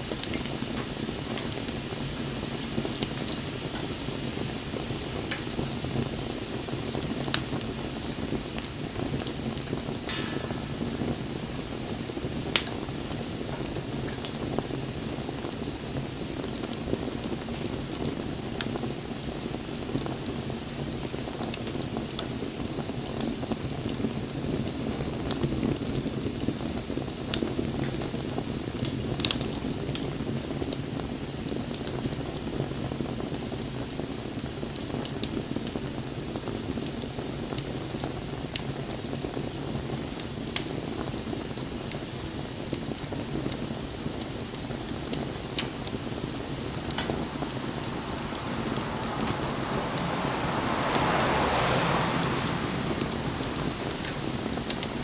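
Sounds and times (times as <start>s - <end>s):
rushing flame noise: 8.6s - 22.2s, 43.0s - 55.0s
burning wood crackles and pops: 8.6s - 22.4s, 42.8s - 55.0s.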